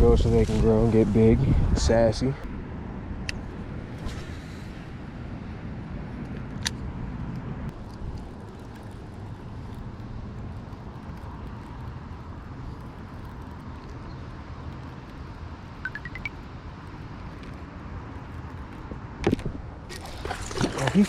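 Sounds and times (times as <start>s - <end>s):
quick rising chirps: 15.8s - 16.3s.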